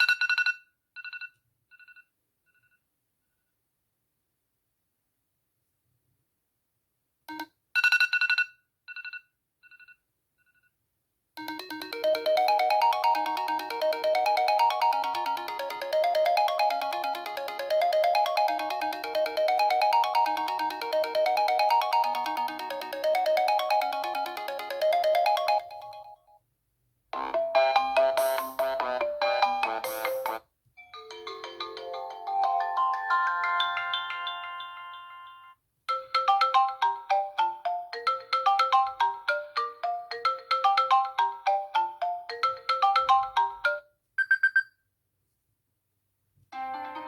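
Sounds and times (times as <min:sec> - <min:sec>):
different phone ringtone: 0:11.4 - 0:26.2, 0:27.2 - 0:44.7
phone ringtone melody: 0:11.4 - 0:26.2, 0:27.2 - 0:44.7
bright chime: 0:30.8 - 0:35.5.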